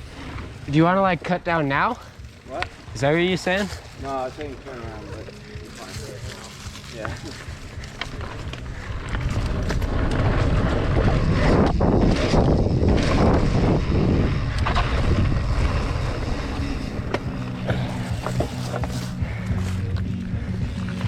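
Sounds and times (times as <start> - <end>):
bike clicks and rattles: 0.0 - 21.0
bike tyres on dirt trail: 0.0 - 21.0
wind on microphone: 8.1 - 19.4.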